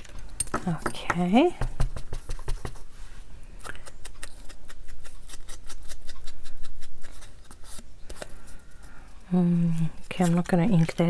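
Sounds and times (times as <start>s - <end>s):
scissors snipping paper: 3.6s - 8.2s.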